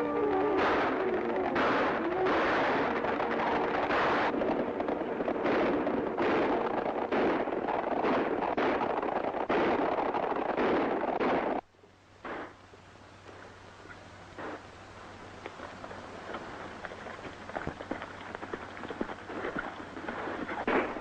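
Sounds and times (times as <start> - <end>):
dense gunfire: 0.4 - 11.6, 12.2 - 12.6, 20.6 - 21.0.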